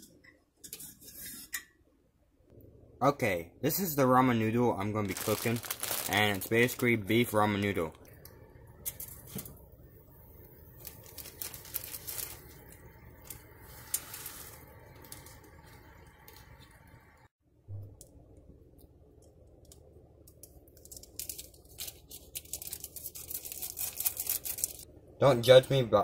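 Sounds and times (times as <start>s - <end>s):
plastic packet crinkling and tearing: 5.0s - 7.0s, 10.7s - 15.6s, 20.8s - 24.8s.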